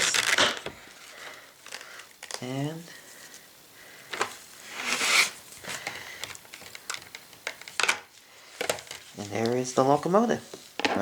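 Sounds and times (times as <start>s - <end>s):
packaging rubbing and scraping: 0.0s - 0.7s, 4.3s - 5.8s.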